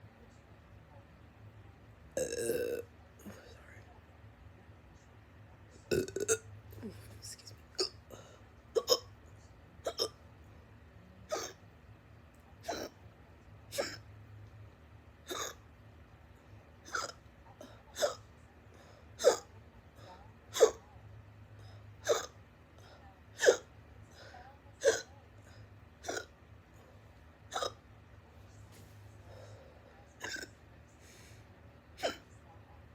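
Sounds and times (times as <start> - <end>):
person hiccuping: 2.2 - 2.8, 5.9 - 7.1, 7.8 - 8.0, 8.8 - 9.1, 9.8 - 10.2, 11.3 - 11.6, 13.7 - 14.0, 15.3 - 15.6, 16.9 - 17.2, 19.2 - 19.5, 22.0 - 22.4, 23.4 - 23.7, 24.8 - 25.1, 26.0 - 26.3, 27.5 - 27.8, 30.2 - 30.6, 32.0 - 32.2.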